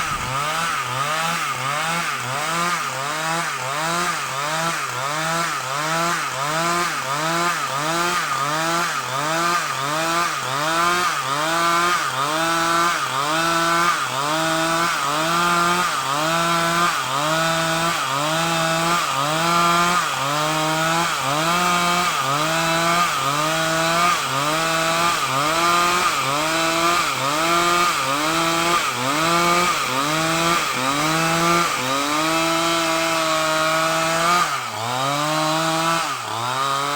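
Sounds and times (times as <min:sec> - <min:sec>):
chainsaw cutting timber: 0:00.0 - 0:36.9.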